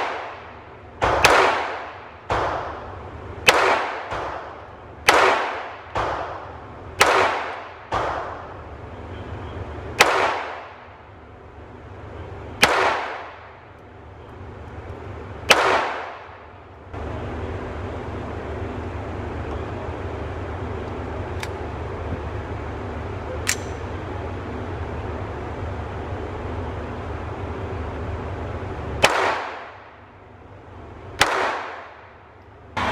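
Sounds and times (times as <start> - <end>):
pistol shots echoing: 0.0 - 8.6, 10.0 - 11.0, 12.6 - 13.7, 15.5 - 16.6, 29.0 - 29.9, 31.2 - 32.2.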